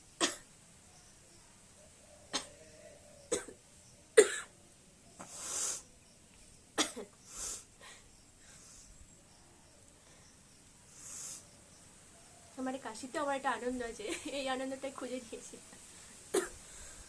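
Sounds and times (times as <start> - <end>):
woman coughing: 3.3 - 3.6, 4.2 - 4.5, 16.3 - 16.6
breathy inhales: 16.0 - 17.0.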